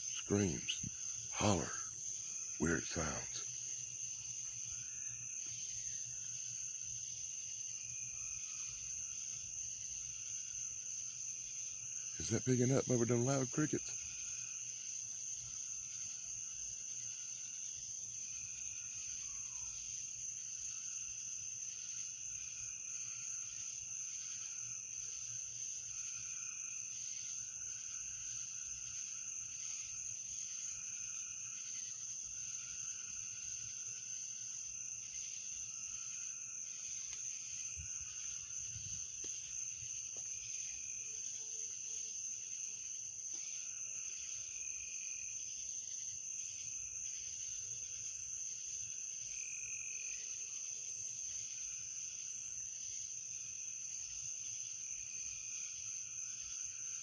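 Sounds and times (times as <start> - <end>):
crickets trilling: 0.0 - 57.0
insect or frog chorus: 0.0 - 57.0.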